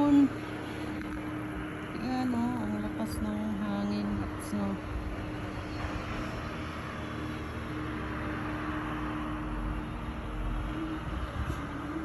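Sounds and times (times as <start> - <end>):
faint steady hum: 0.0 - 6.0
strong wind buffeting microphone: 9.8 - 12.0.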